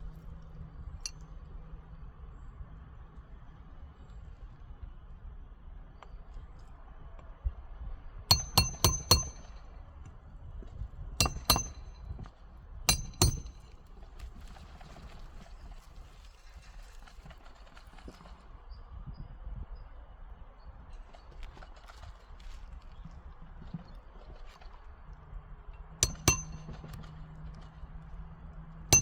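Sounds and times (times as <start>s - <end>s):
hammer striking metal: 8.3s - 9.6s, 11.2s - 11.9s, 12.9s - 13.6s, 26.0s - 27.0s.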